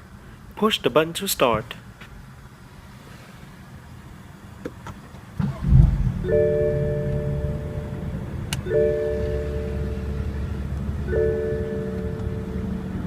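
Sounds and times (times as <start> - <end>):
car engine starting and idling: 4.1 - 13.0
dashboard chime: 6.2 - 12.9.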